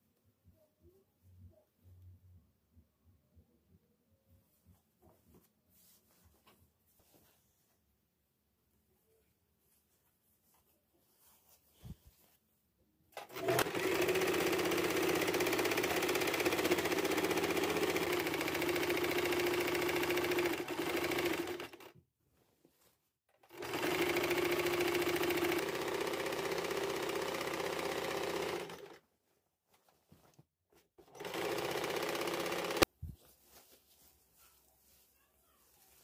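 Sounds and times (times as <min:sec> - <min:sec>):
sewing machine stitching: 0:13.2 - 0:21.9, 0:23.4 - 0:29.0, 0:31.0 - 0:32.9.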